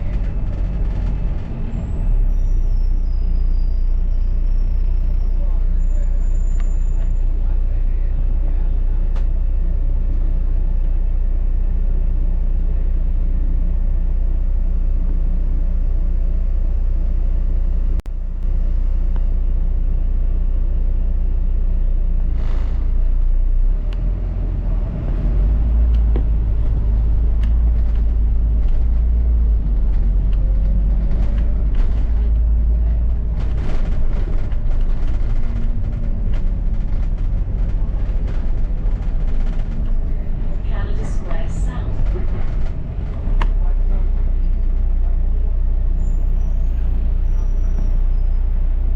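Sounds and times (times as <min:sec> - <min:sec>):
rattles and knocks: 0:00.0 - 0:01.7, 0:26.0 - 0:45.1
bus engine and road rumble: 0:00.0 - 0:48.9.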